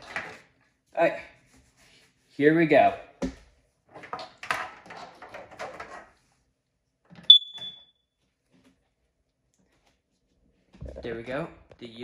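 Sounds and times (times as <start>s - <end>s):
alarm high-pitched beep: 7.3s - 7.9s.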